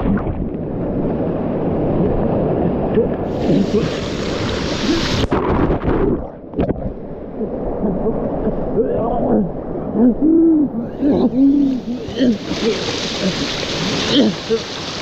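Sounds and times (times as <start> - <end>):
rushing whitewater: 3.0 - 5.3, 10.9 - 15.0.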